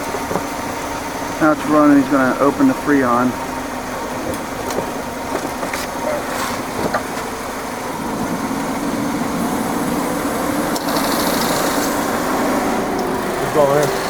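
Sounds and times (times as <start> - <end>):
car engine idling: 0.0 - 14.0
high hiss of refrigerant flowing: 5.9 - 14.0.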